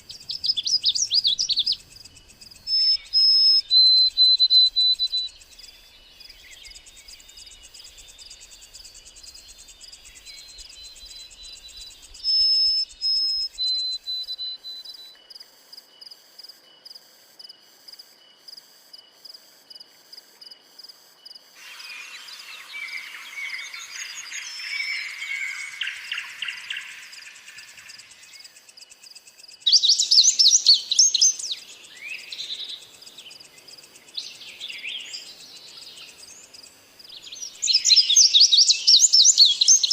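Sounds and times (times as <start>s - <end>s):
whistled bird notes: 0.0s - 8.2s, 9.0s - 15.2s, 21.6s - 28.6s
buzzy chattering bird chorus: 21.6s - 28.7s
high-pitched insect drone: 21.6s - 29.2s
birds calling: 21.7s - 28.7s.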